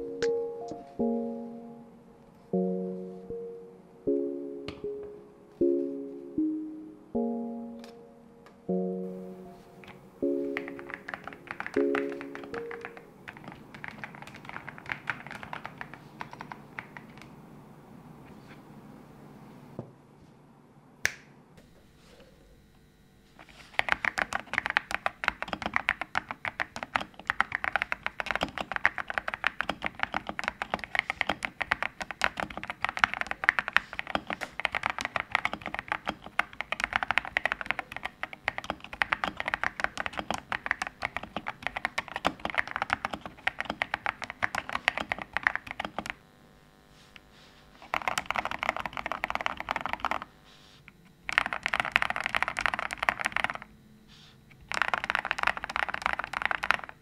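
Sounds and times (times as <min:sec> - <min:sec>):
mechanical keyboard typing: 0:09.8 - 0:17.3, 0:23.5 - 0:46.2, 0:47.8 - 0:50.3, 0:51.2 - 0:53.7, 0:54.6 - 0:57.0.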